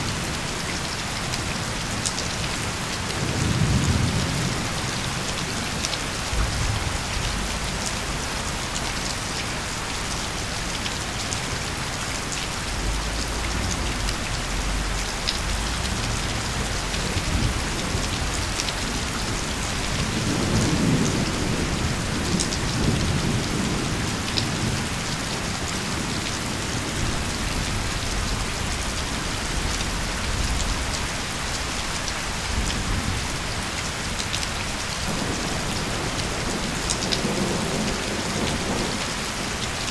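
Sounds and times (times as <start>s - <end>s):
heavy rain: 0.0s - 39.9s
low thunder rumbling: 3.2s - 31.1s
raindrop ticks: 12.2s - 20.8s.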